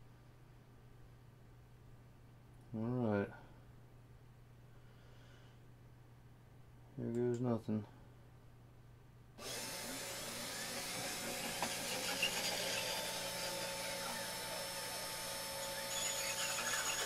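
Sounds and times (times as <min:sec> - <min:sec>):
spindle motor running: 0:09.4 - 0:17.0
stepper motors whining: 0:09.4 - 0:17.0.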